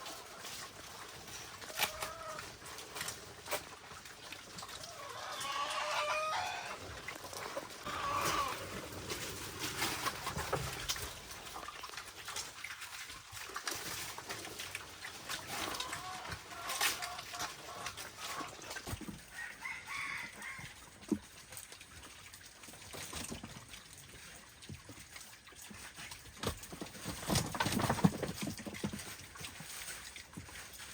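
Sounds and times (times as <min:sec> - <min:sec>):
chickens clucking: 0:00.0 - 0:11.8, 0:14.8 - 0:21.5
knocks and clatter: 0:26.4 - 0:29.2.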